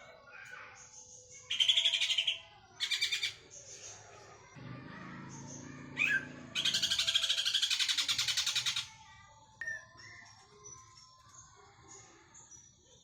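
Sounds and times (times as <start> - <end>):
bird chattering in fast bursts: 6.0 - 8.9.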